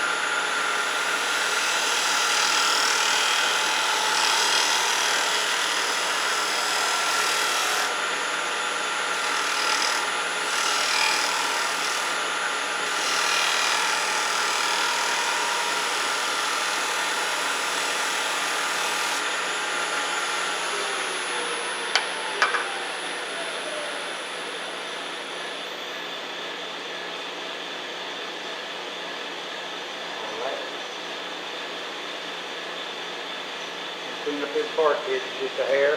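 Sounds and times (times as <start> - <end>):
cutting tool scraping wood: 0.0 - 8.0, 9.2 - 12.2, 12.9 - 19.3
wood lathe motor whine: 0.0 - 35.9.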